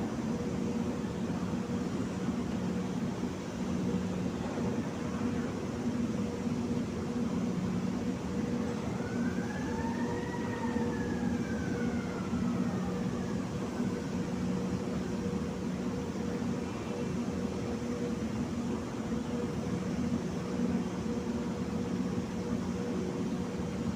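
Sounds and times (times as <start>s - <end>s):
constant low hum: 0.0s - 23.9s
faint siren-like tone: 8.4s - 15.2s.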